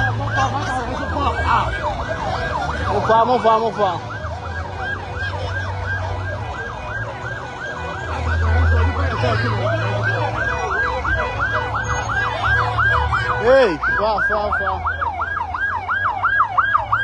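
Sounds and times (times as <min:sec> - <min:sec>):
emergency siren yelping: 0:00.0 - 0:17.0.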